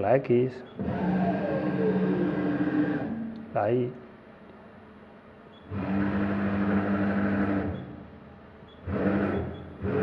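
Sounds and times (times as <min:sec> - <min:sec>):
servo motor two-tone whine: 0:00.7 - 0:03.3, 0:05.6 - 0:08.0, 0:08.7 - 0:10.0.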